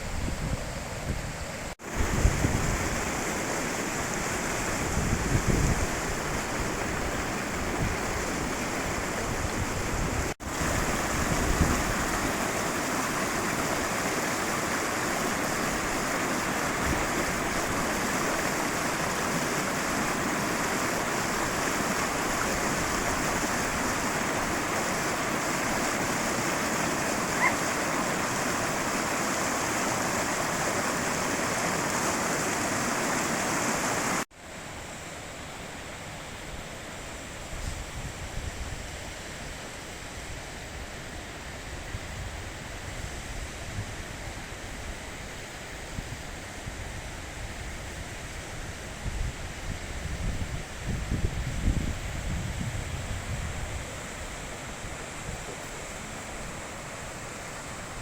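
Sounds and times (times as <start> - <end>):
river rushing over rocks: 1.8 - 34.8, 53.4 - 58.0.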